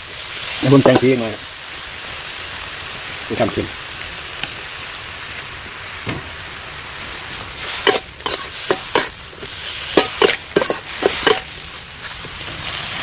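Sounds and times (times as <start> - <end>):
food sizzling in a pan: 0.0 - 13.0
spatula scraping and knocking pan: 7.6 - 12.5.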